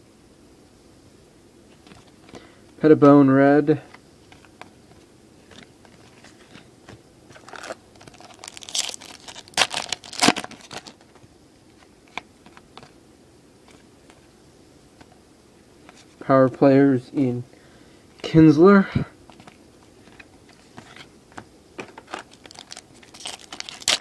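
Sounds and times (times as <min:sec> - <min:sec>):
foil wrapper crinkling and tearing: 0:07.3 - 0:11.2, 0:21.8 - 0:24.0.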